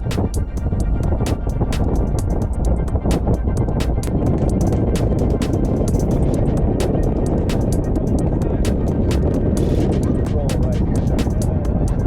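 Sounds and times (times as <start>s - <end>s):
background music: 0.0s - 12.0s
sharp clicks and rattles: 0.0s - 12.0s
wind and vehicle rumble: 0.0s - 12.0s.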